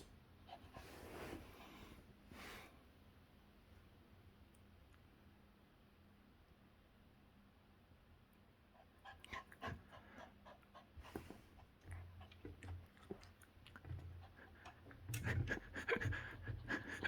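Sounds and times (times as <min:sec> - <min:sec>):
puppy panting: 0:08.8 - 0:17.0.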